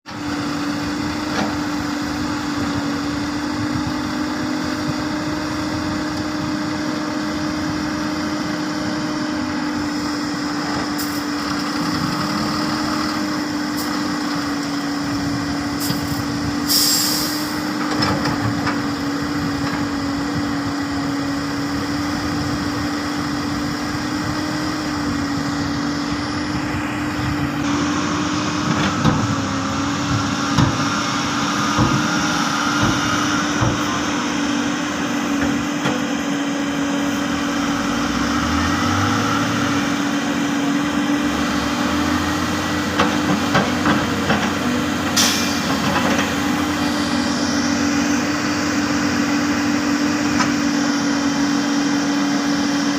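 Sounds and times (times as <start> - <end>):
excavator diesel engine running: 0.1 - 52.9
short hiss of air: 16.7 - 17.6.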